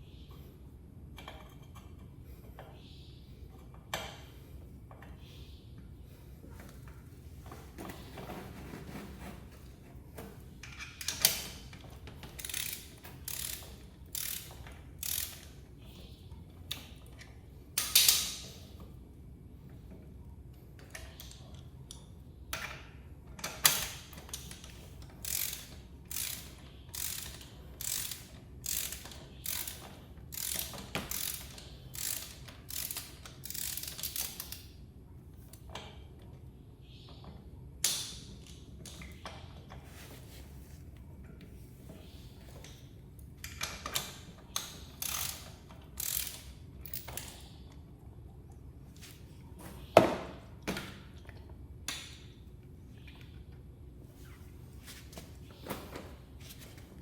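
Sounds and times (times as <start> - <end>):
ratchet wrench clicking: 10.7 - 15.6, 23.6 - 34.7, 43.5 - 47.4.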